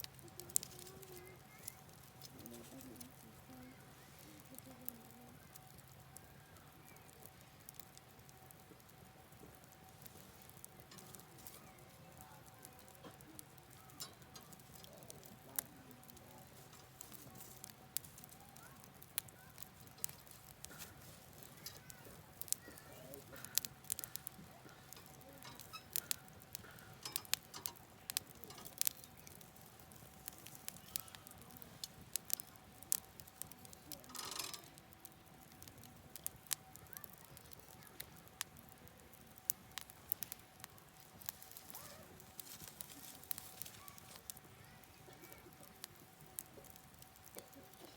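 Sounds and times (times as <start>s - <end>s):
campfire crackling and popping: 0.0s - 47.9s.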